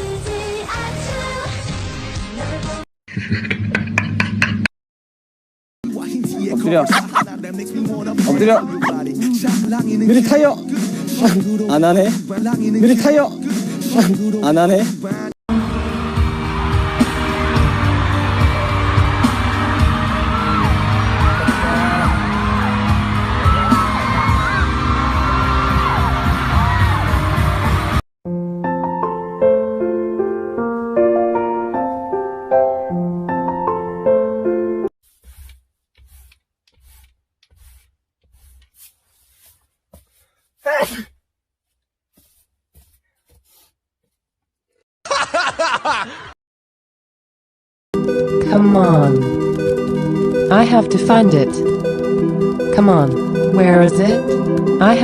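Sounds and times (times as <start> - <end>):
pop music with steady beat: 5.8 - 28.0
burst of laughter: 6.8 - 7.3
voices whooping and yelling: 16.2 - 27.1.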